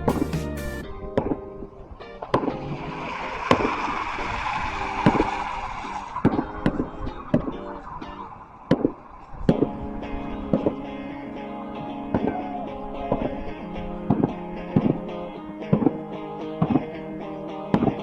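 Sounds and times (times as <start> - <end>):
background music: 0.0 - 1.7
fireworks hissing crackle: 2.8 - 6.3.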